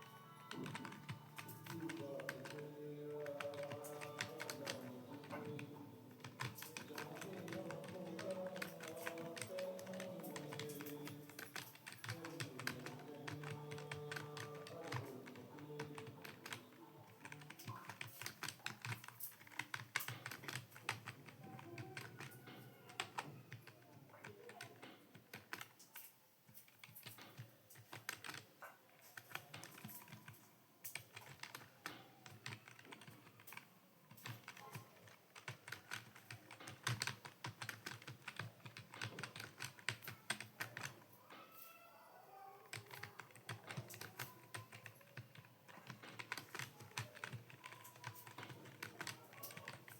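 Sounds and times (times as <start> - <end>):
music with held notes: 0.0 - 5.7
fast typing on keyboard: 0.0 - 41.0, 42.6 - 49.9.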